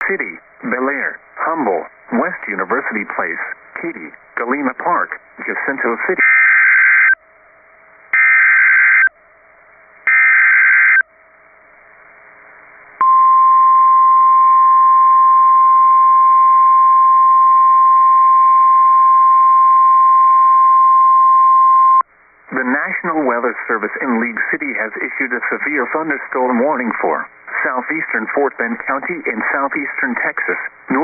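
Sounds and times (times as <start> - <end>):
steady warning alarm tone: 6.1 - 12.2.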